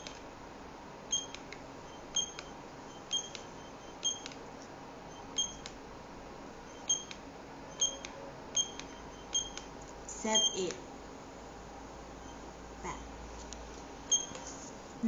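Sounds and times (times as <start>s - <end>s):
keypad beeping: 1.1s - 4.4s, 5.1s - 5.7s, 6.7s - 9.7s, 10.3s - 10.8s, 14.1s - 14.5s.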